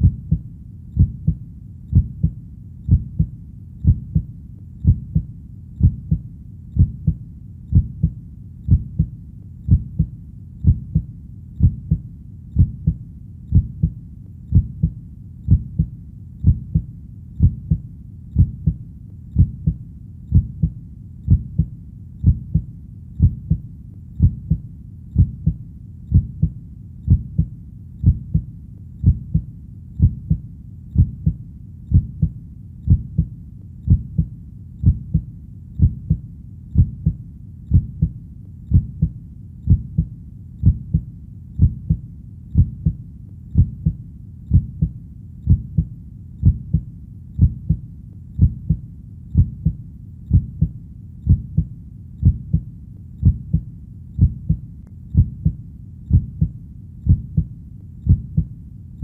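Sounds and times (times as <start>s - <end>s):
heartbeat double thump: 0.0s - 0.4s, 1.0s - 6.2s, 6.8s - 9.1s, 9.7s - 12.0s, 12.6s - 17.8s, 19.4s - 23.6s, 24.2s - 24.6s, 25.2s - 30.4s, 31.0s - 32.3s, 33.9s - 36.2s, 36.8s - 42.0s, 42.6s - 43.0s, 43.6s - 47.8s, 48.4s - 48.8s, 49.4s - 50.7s, 51.3s - 53.6s, 54.2s - 54.6s, 55.2s - 56.5s, 57.1s - 57.5s, 58.1s - 58.5s.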